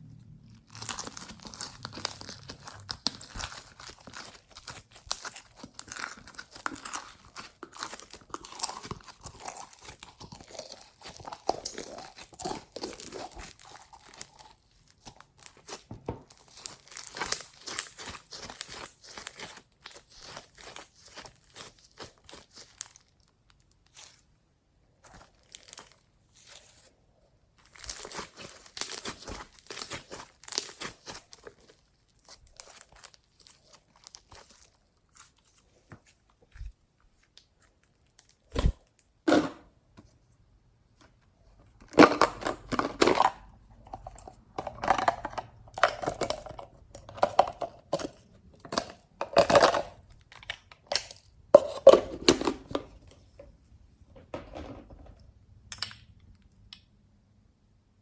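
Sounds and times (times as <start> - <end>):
slime crackling and popping: 0.4 - 24.3, 25.0 - 26.9, 27.6 - 39.2, 44.9 - 51.4.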